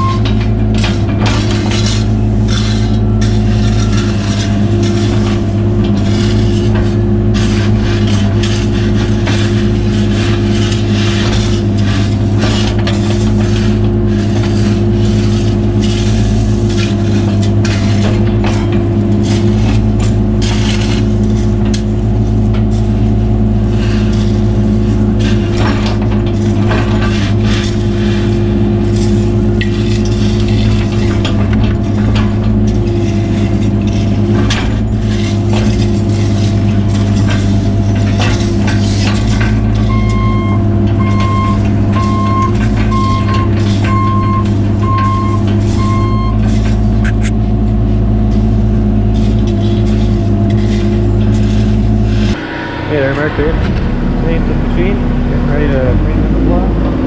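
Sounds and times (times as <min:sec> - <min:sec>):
scrapes and knocks: 0:00.0 - 0:52.4
excavator diesel engine running: 0:00.0 - 0:57.0.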